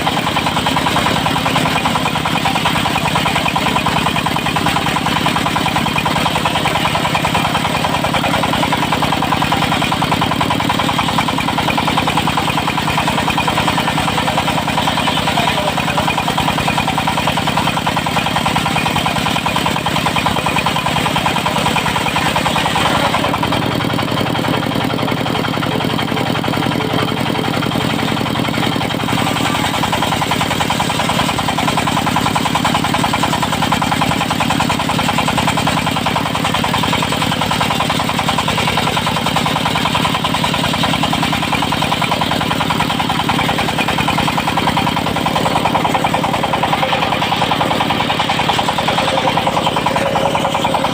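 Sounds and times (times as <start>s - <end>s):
diesel engine running: 0.0s - 50.9s.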